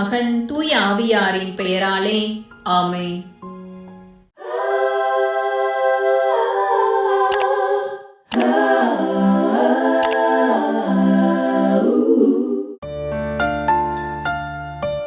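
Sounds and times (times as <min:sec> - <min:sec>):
voices singing unaccompanied: 0:04.4 - 0:12.8.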